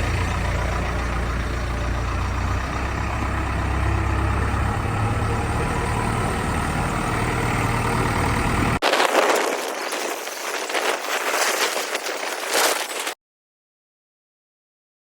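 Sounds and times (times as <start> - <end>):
diesel engine running: 0.0 - 8.8.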